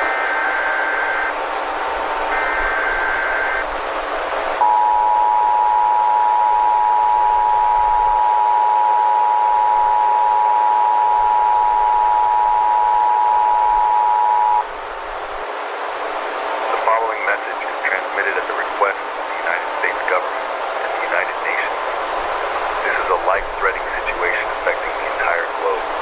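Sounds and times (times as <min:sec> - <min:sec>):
steady hiss: 0:00.0 - 0:04.6, 0:14.6 - 0:26.0
two-tone attention signal: 0:02.3 - 0:03.6, 0:04.6 - 0:14.6.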